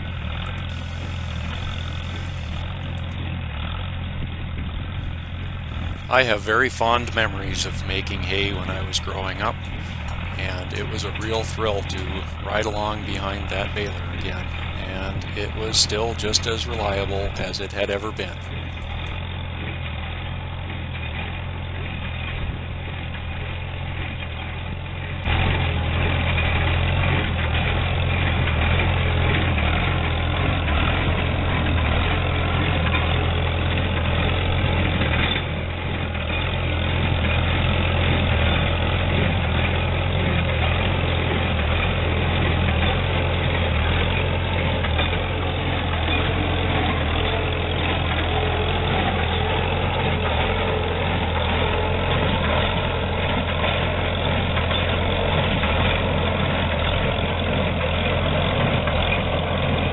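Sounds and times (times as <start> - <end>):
baler mechanical clatter: 0.0 - 3.3
tractor engine running: 0.0 - 59.9.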